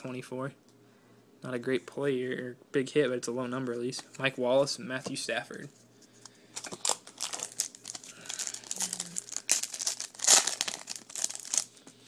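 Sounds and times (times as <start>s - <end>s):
foil wrapper crinkling and tearing: 6.6s - 11.8s.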